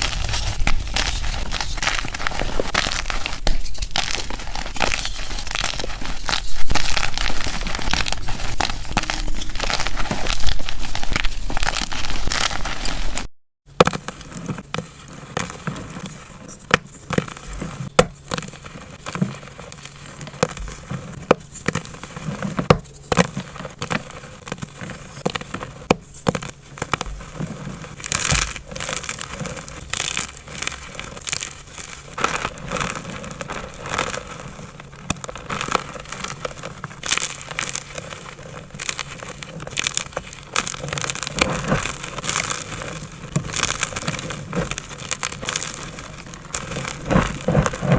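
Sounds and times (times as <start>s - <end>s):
chalk being crushed: 0.0s - 47.9s.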